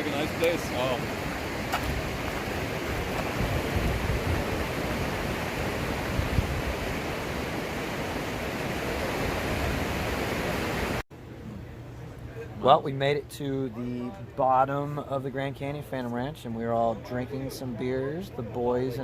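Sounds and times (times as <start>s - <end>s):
fast-flowing creek rushing: 0.0s - 11.0s.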